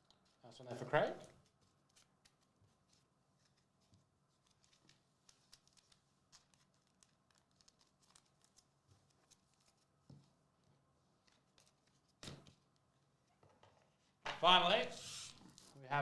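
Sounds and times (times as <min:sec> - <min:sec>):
cards and foil packs rustling: 0:04.3 - 0:09.9, 0:14.3 - 0:15.8.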